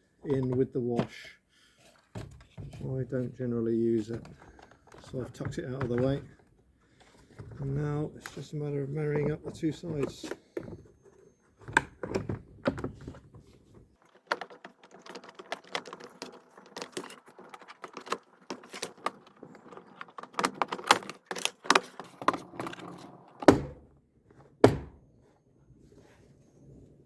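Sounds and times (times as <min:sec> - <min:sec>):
plastic casing clicking and rattling: 0:14.0 - 0:23.0
plastic casing knocks: 0:24.6 - 0:25.0.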